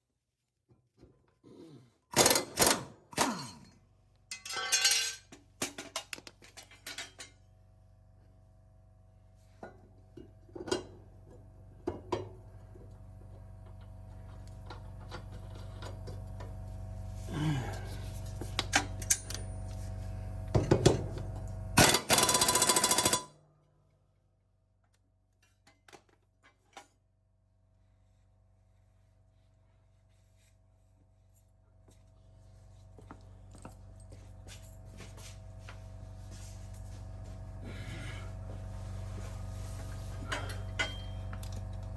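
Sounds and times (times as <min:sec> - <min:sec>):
tools clinking on metal: 0:04.3 - 0:07.4, 0:40.3 - 0:41.5
impact wrench hammering: 0:21.8 - 0:23.3
low steady hum: 0:23.2 - 0:41.9.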